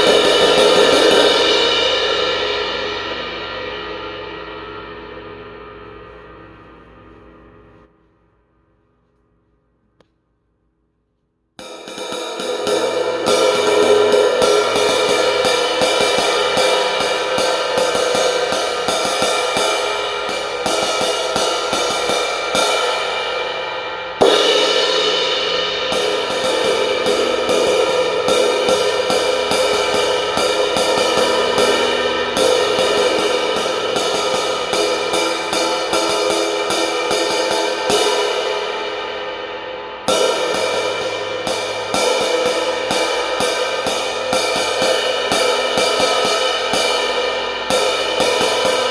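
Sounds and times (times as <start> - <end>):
crash cymbal struck hard: 0.0 - 6.6, 11.6 - 48.9
drumsticks on crash cymbal: 11.8 - 39.4.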